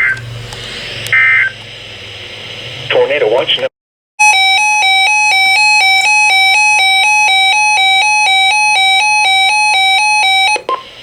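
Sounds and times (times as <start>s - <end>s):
electronic two-tone alert: 4.2s - 10.6s.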